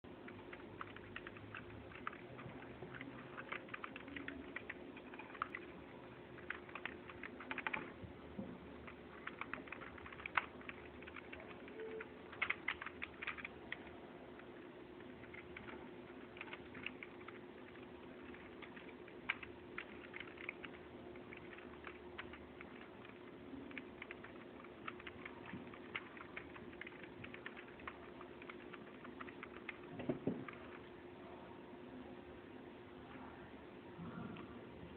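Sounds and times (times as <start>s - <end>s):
faint steady hum: 0.1s - 34.9s
keyboard keys clicking: 0.3s - 8.0s, 8.8s - 14.5s, 15.1s - 30.8s.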